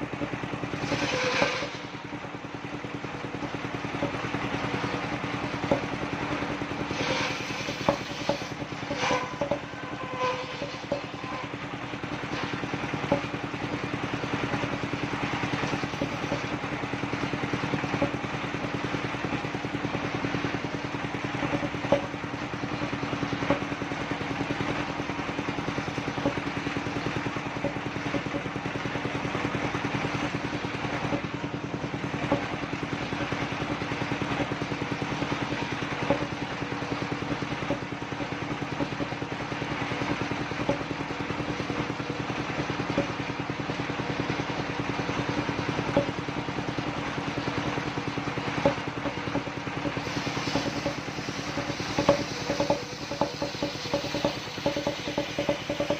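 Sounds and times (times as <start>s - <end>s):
circular sawmill droning: 0.0s - 55.9s
sharp knocks: 6.9s - 11.6s, 12.3s - 13.4s, 21.4s - 22.2s, 40.6s - 40.9s, 48.6s - 55.9s.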